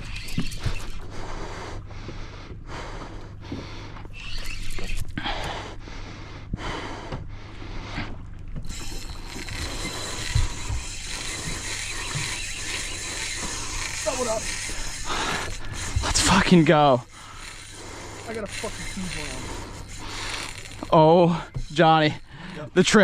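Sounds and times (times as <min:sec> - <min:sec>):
fishing reel ratcheting: 0:00.0 - 0:01.2, 0:04.1 - 0:05.3, 0:08.6 - 0:23.0.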